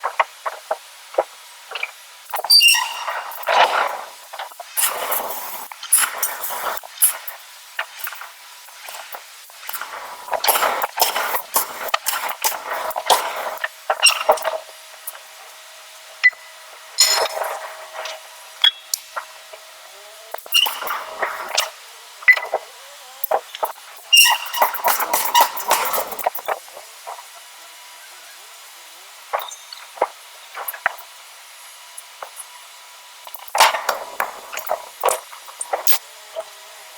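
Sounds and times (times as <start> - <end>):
hammer striking hot iron: 17.0 - 18.8.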